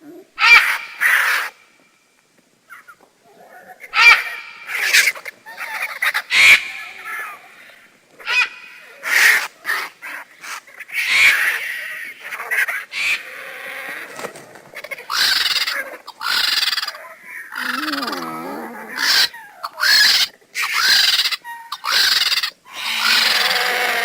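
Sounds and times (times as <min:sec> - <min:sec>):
vultures calling: 0:00.0 - 0:01.6, 0:02.7 - 0:24.0.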